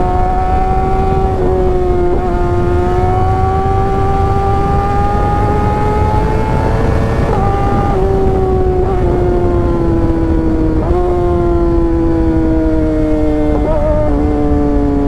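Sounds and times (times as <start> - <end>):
motorcycle engine revving: 0.0 - 15.0.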